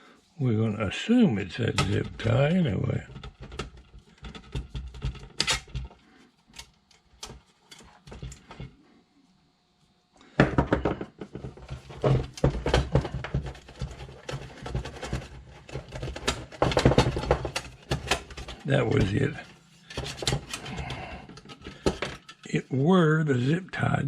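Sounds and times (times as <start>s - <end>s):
clattering and rattling: 2.9s - 6.0s, 10.6s - 22.5s.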